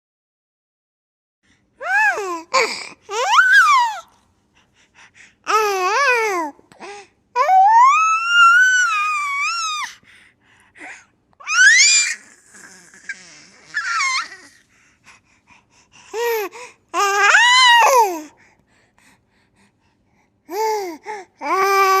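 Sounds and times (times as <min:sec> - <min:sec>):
baby squealing cries: 0:03.1 - 0:04.1, 0:07.4 - 0:09.9, 0:11.4 - 0:14.5, 0:17.0 - 0:18.1.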